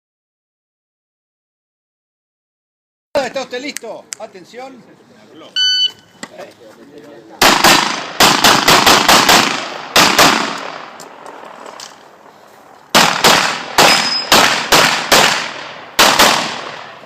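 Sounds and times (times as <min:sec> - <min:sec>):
pistol shots with ring-out: 0:07.4 - 0:11.0, 0:12.9 - 0:17.0.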